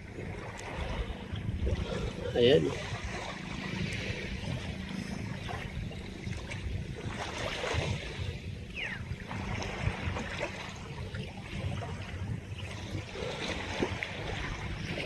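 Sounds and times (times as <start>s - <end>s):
waves washing: 0.0s - 15.0s
wind buffeting microphone: 0.0s - 15.0s.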